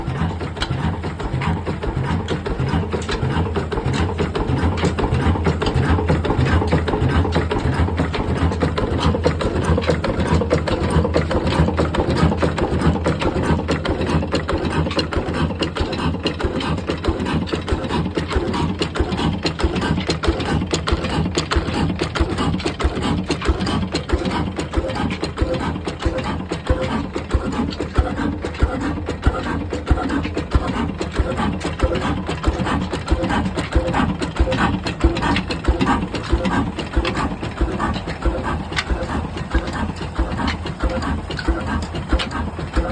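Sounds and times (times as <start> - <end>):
diesel engine clattering: 0.0 - 42.9.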